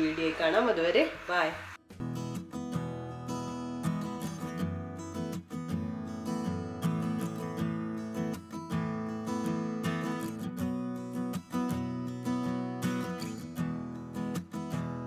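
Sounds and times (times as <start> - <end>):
strummed acoustic guitar: 0.0 - 15.0.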